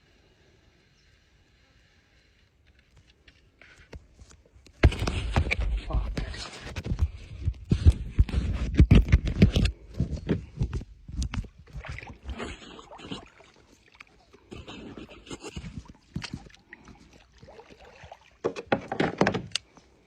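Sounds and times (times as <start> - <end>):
knocks and thumps against kayak: 4.7 - 13.3, 18.4 - 19.6.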